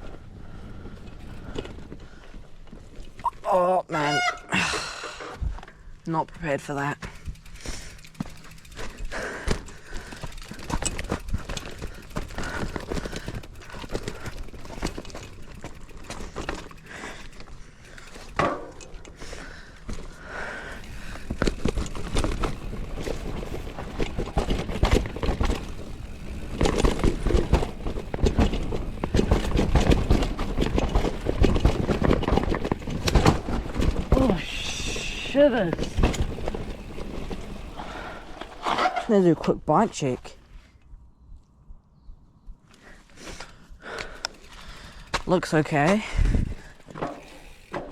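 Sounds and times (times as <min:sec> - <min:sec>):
bike tyres rolling on dirt: 0:00.0 - 0:41.2, 0:42.7 - 0:47.9
bike frame rattling and knocking: 0:06.4 - 0:19.3, 0:20.8 - 0:38.7, 0:44.0 - 0:47.9.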